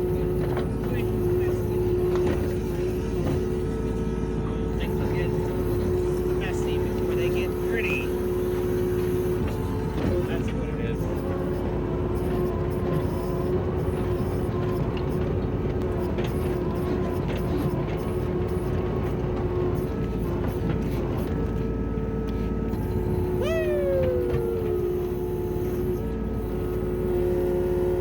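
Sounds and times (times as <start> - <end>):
mini excavator running with whine: 0.0 - 28.0
short squeal sliding down in pitch: 22.9 - 25.4.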